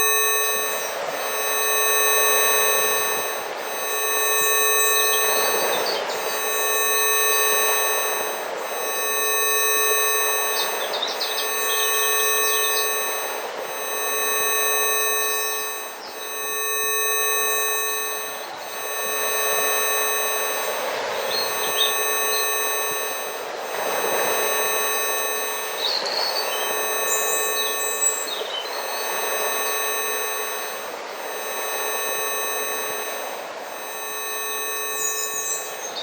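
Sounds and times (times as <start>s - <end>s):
steady electronic tone: 0.0s - 36.0s
birds chirping: 4.9s - 6.4s, 10.0s - 13.2s, 21.2s - 22.5s, 25.6s - 29.4s, 35.0s - 36.0s.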